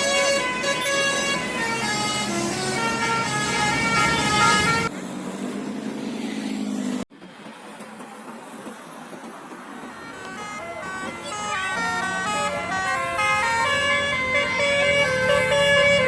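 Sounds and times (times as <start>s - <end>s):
bus musical horn melody: 0.0s - 4.9s, 10.1s - 16.0s.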